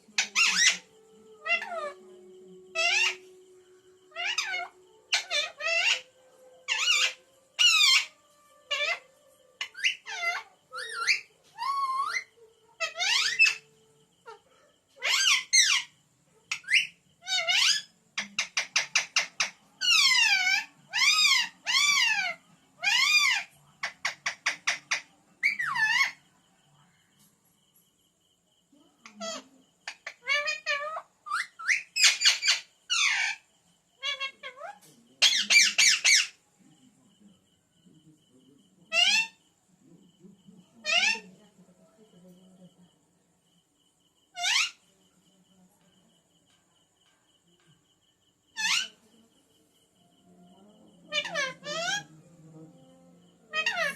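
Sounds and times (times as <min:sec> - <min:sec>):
parrot chattering: 0:00.2 - 0:02.0, 0:02.7 - 0:03.2, 0:09.6 - 0:13.6, 0:16.5 - 0:26.2, 0:29.0 - 0:36.4, 0:38.9 - 0:39.4, 0:40.8 - 0:41.4, 0:44.3 - 0:44.8, 0:48.5 - 0:49.0, 0:51.0 - 0:52.1, 0:53.5 - 0:53.9
parrot squawking: 0:00.2 - 0:02.0, 0:02.7 - 0:03.3, 0:04.1 - 0:09.0, 0:09.6 - 0:13.6, 0:15.0 - 0:15.9, 0:16.5 - 0:26.2, 0:29.0 - 0:33.4, 0:34.0 - 0:36.4, 0:38.9 - 0:39.4, 0:40.8 - 0:41.3, 0:44.3 - 0:44.8, 0:48.6 - 0:49.0, 0:51.1 - 0:52.1, 0:53.5 - 0:53.9.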